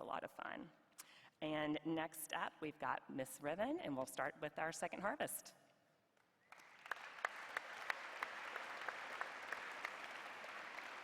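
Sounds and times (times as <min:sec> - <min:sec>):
audience applauding: 0:06.5 - 0:11.0
single sharp claps: 0:06.5 - 0:11.0.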